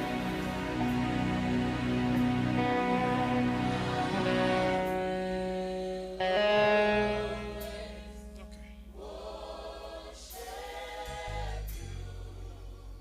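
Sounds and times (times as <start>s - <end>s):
keyboard chords: 0.0s - 9.3s
bass line: 0.0s - 13.0s
choir singing: 0.0s - 13.0s.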